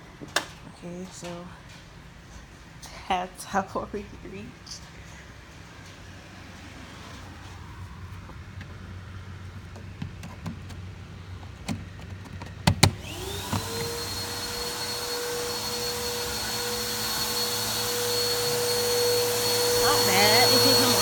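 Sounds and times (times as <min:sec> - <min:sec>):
vacuum cleaner motor whining: 0:12.8 - 0:21.0.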